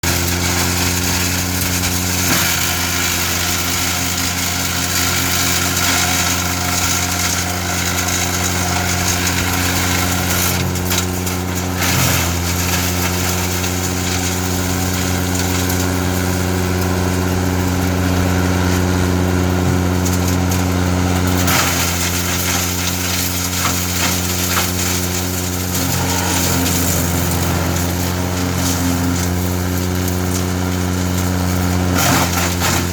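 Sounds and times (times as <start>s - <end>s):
tractor running: 0.0s - 32.9s
wood chipper chipping brush: 0.0s - 32.9s.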